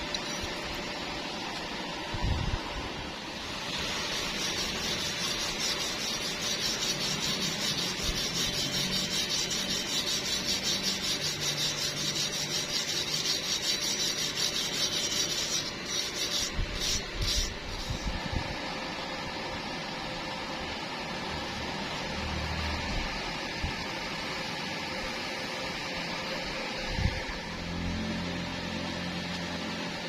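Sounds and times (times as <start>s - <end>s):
welding arc crackling and sizzling: 3.4s - 18.2s.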